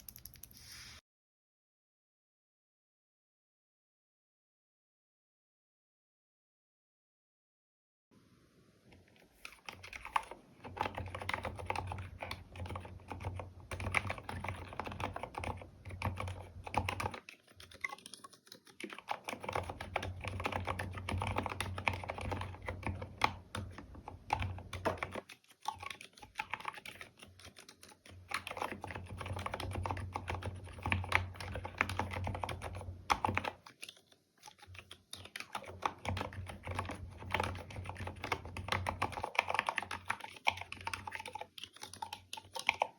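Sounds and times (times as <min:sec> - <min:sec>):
typing on mechanical keyboard: 0:00.0 - 0:00.7, 0:09.4 - 0:42.9.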